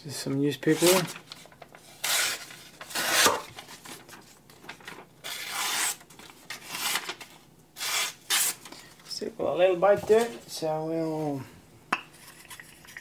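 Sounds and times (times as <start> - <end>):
knife scraping through newspaper: 0.7 - 4.0, 5.2 - 6.0, 6.6 - 8.7.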